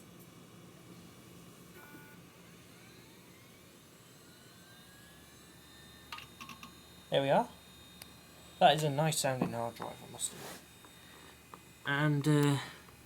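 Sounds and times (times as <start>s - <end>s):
hard drive whine rising: 0.0s - 13.0s.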